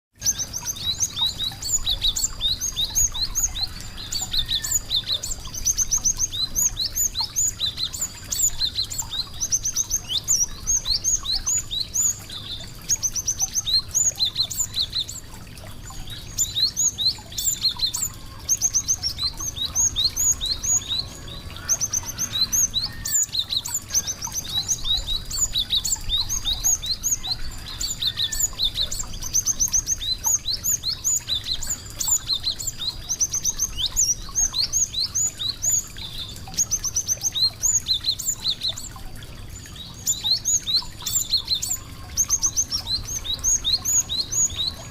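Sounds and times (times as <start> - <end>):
small songbirds chirping: 0.1 - 44.9
thin steady high tone: 0.3 - 44.9.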